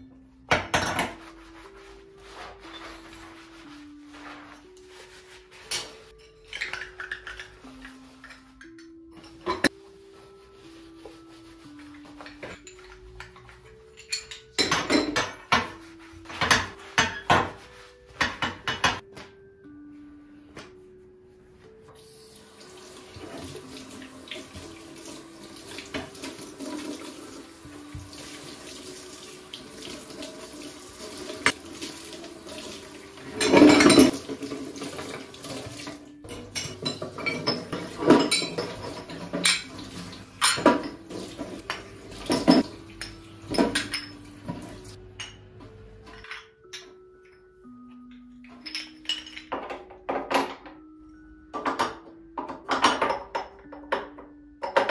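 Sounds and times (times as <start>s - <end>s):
dishes and cutlery clinking: 0.5s - 1.4s, 5.6s - 9.8s, 11.8s - 19.3s, 32.8s - 50.9s, 51.5s - 54.9s
kitchen tap running into sink: 22.5s - 36.0s
loud clatter of dishes: 33.4s - 34.2s.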